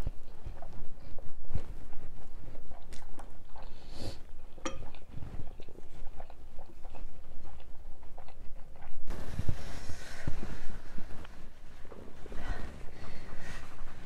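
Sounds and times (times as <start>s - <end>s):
stomach gurgles and pops: 0.0s - 9.5s.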